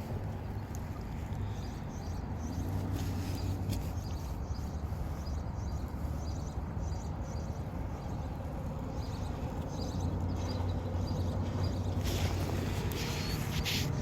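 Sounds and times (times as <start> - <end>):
low outdoor rumble: 0.0 - 14.0
faint light ticks: 0.2 - 1.5.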